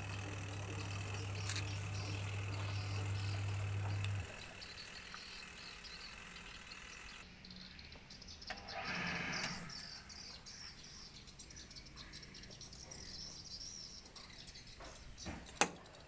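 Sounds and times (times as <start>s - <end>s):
faint insects chirring: 0.0s - 8.5s.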